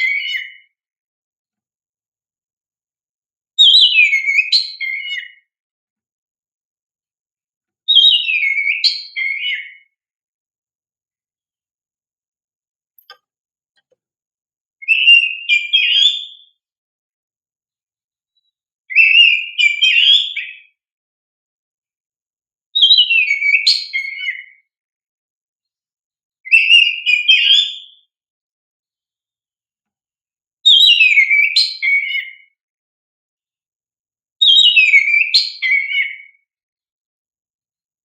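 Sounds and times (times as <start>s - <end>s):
bird whistled song phrases: 0.0s - 0.8s, 3.6s - 5.5s, 7.9s - 10.0s, 14.8s - 16.6s, 18.4s - 20.8s, 22.8s - 24.7s, 26.5s - 28.1s, 30.6s - 32.6s, 34.4s - 36.4s.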